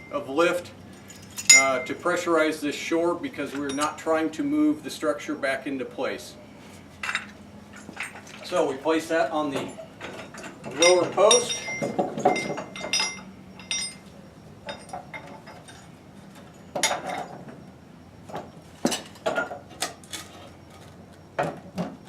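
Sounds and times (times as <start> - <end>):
metallic clinks and knocks: 0.9 - 2.0, 3.4 - 4.1, 7.0 - 8.6, 9.4 - 17.6.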